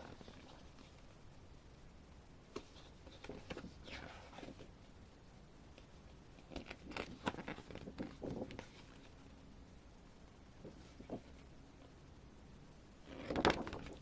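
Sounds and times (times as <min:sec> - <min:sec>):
booklet pages rustling: 0:00.0 - 0:01.0, 0:02.5 - 0:04.7, 0:05.8 - 0:09.2, 0:10.6 - 0:11.5, 0:13.1 - 0:14.0.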